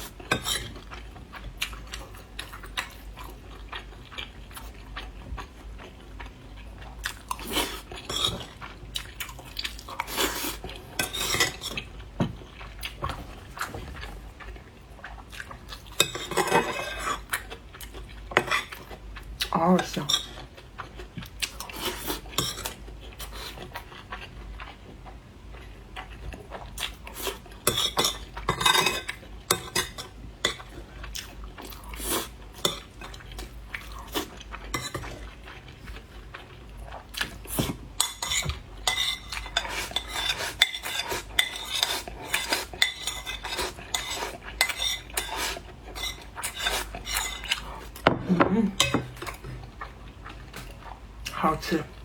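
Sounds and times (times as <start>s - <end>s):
utensils clinking on a dish: 27.7s - 30.7s, 37.6s - 49.5s.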